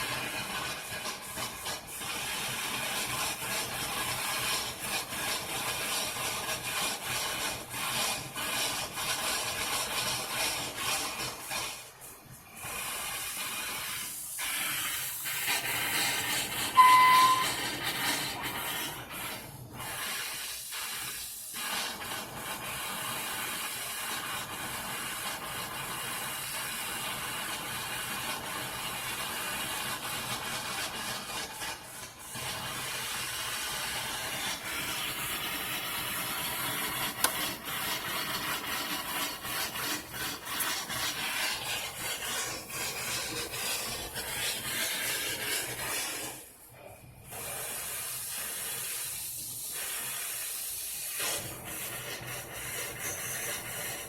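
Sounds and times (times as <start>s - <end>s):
air and water spraying from valve: 0.0s - 54.0s.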